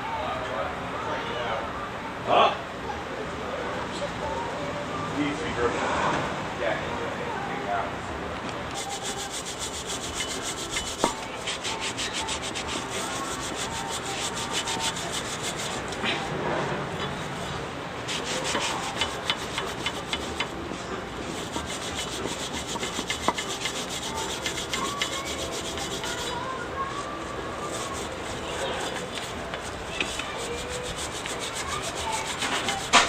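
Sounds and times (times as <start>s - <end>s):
scrubbing brake part by hand: 8.7s - 33.0s.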